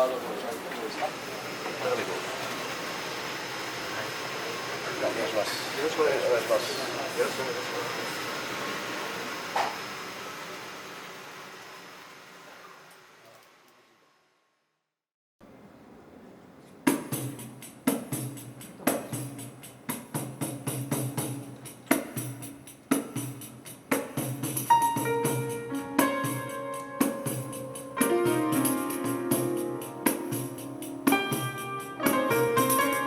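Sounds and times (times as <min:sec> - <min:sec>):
piano chords: 0:24.6 - 0:33.0.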